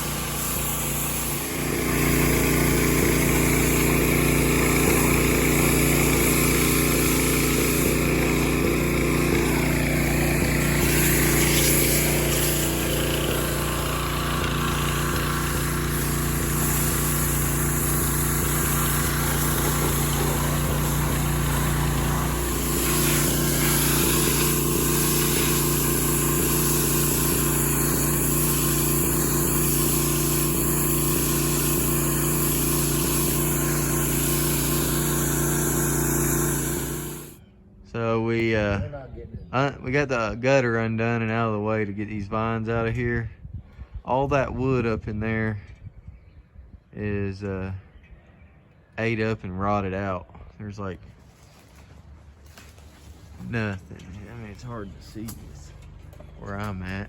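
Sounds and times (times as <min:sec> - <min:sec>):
small gasoline engine running: 0:00.0 - 0:37.4.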